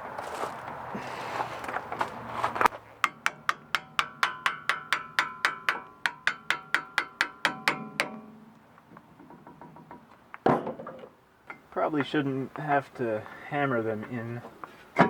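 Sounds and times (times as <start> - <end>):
brake pads scraping: 0.0 - 3.2
hammer tapping on metal: 3.0 - 10.6.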